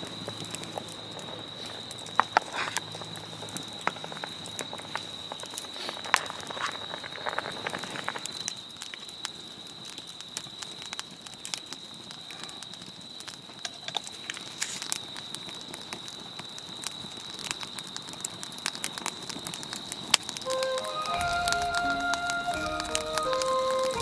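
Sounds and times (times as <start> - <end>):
campfire crackling and popping: 0.0 - 24.0
faint high-pitched tone: 20.5 - 24.0.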